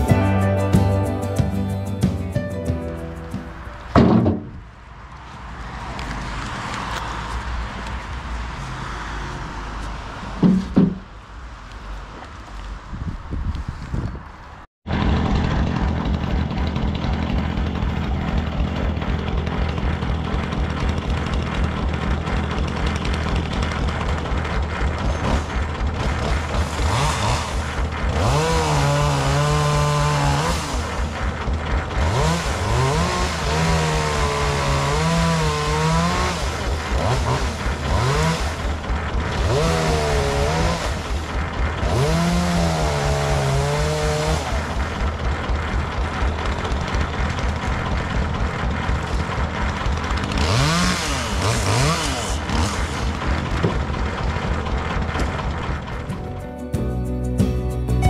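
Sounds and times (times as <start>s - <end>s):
chainsaw revving through wood: 14.9s - 54.1s.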